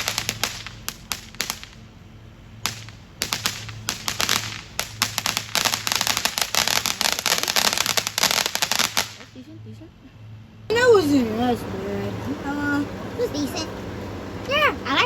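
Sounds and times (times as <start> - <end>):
firework popping and crackling: 0.0 - 2.0, 2.6 - 9.4.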